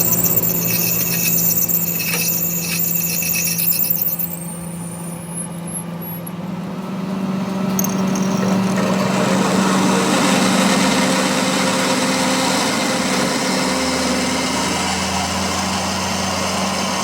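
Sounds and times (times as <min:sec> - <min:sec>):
metal squealing and scraping: 0:00.0 - 0:06.3.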